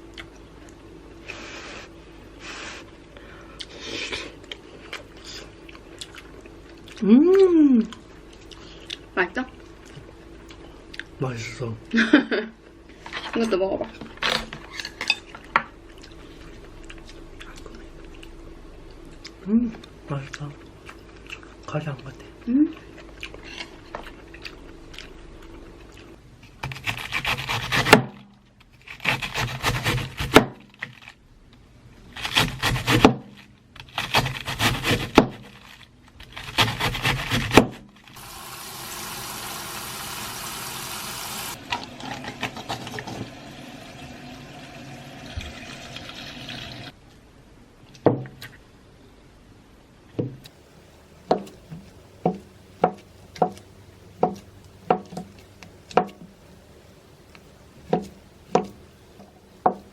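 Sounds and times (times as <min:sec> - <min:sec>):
knife rasping through food: 0:26.6 - 0:28.0, 0:28.8 - 0:30.4, 0:32.2 - 0:33.2, 0:33.8 - 0:35.6, 0:36.3 - 0:37.7
knife chopping on wooden board: 0:26.6 - 0:28.2, 0:29.0 - 0:30.7, 0:32.2 - 0:35.5, 0:36.5 - 0:37.9, 0:51.3 - 0:53.6, 0:54.2 - 0:56.3, 0:57.9 - 0:58.8, 0:59.6 - 0:59.9.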